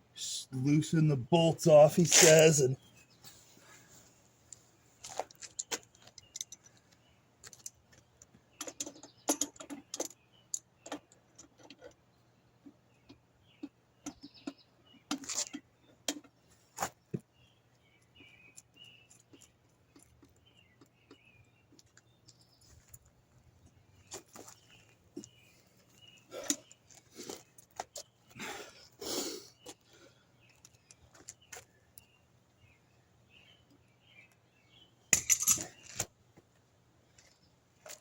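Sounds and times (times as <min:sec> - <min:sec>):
tools and bolts clinking: 0:05.0 - 0:06.8, 0:07.4 - 0:12.0, 0:35.1 - 0:36.1.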